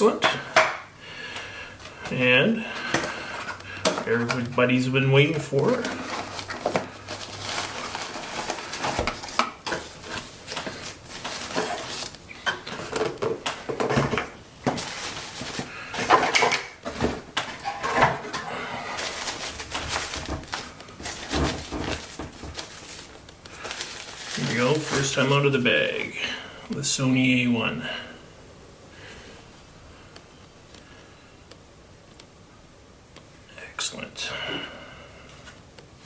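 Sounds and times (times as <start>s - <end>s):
packaging clicks and knocks: 19.0s - 25.0s.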